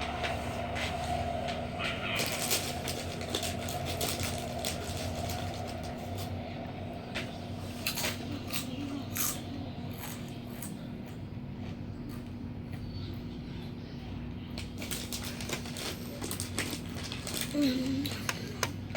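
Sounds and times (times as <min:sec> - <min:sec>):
steady low tone: 0:00.0 - 0:14.5
crinkling crackles and rustles: 0:00.1 - 0:08.8, 0:14.5 - 0:18.8.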